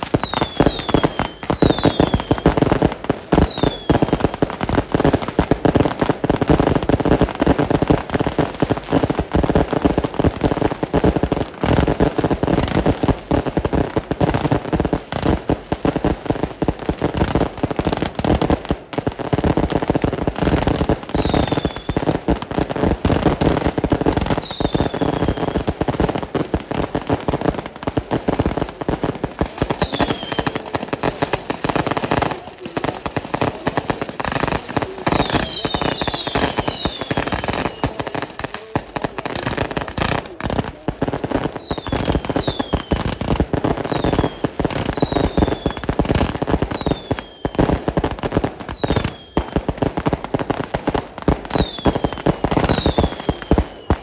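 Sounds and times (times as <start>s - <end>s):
falling firework whistles: 0.0s - 2.7s, 3.3s - 4.2s, 21.0s - 22.2s, 24.3s - 25.7s, 29.8s - 30.6s, 35.1s - 38.0s, 41.5s - 43.2s, 43.8s - 45.9s, 46.6s - 47.6s, 48.7s - 49.5s, 51.4s - 54.0s
fireworks crackling and banging: 0.0s - 54.0s.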